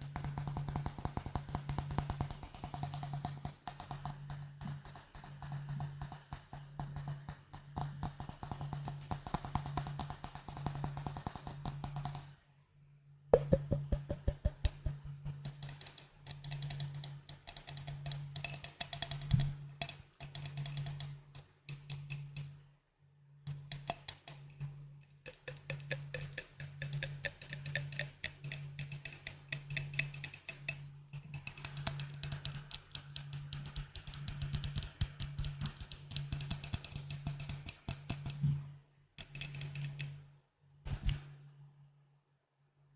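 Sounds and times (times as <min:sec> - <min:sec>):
glass bottles tapped rapidly: 0:25.3 - 0:38.4.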